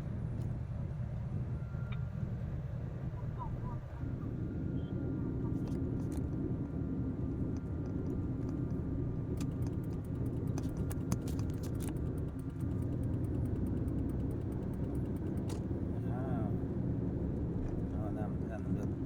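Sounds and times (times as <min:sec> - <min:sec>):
truck engine running: 0:00.0 - 0:19.0
sharp clicks and ticks: 0:09.4 - 0:15.9.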